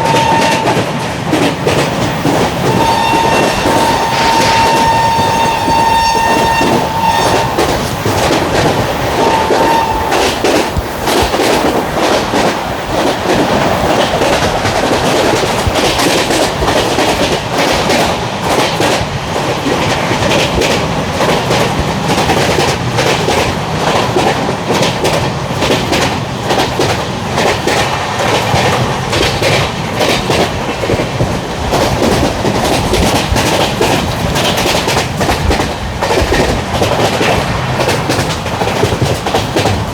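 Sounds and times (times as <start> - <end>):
locomotive horn: 0.0 - 0.9, 2.6 - 7.8, 9.1 - 10.4
train wheels clattering on track: 0.0 - 39.9.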